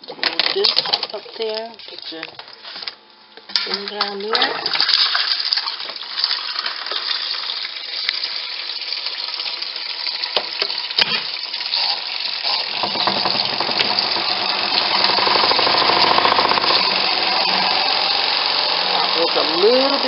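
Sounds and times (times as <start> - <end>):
spin-dryer motor running: 12.0 - 20.0.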